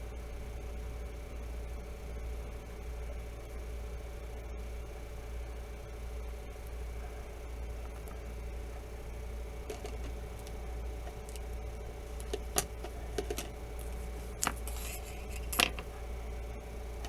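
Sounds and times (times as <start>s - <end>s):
steady low hum: 0.0s - 17.0s
small clicks and taps: 9.7s - 11.5s, 12.2s - 15.9s.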